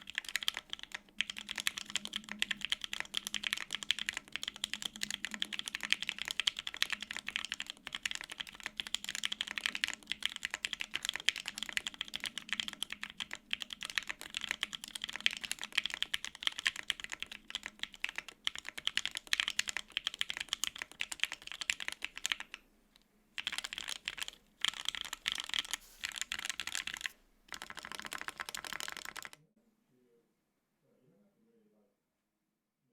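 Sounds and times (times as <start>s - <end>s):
fast typing on mechanical keyboard: 0.0s - 22.6s, 23.4s - 29.4s.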